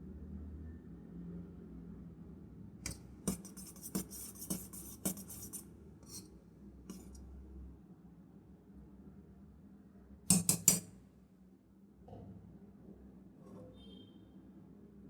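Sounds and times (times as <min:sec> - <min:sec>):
harsh scrubbing scrapes: 0:03.3 - 0:06.3.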